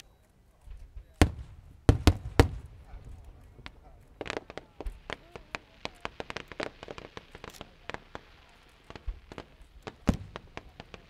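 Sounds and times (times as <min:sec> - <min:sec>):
fireworks crackling: 0:00.0 - 0:11.0
deep firework bang: 0:01.0 - 0:03.9, 0:10.0 - 0:11.0.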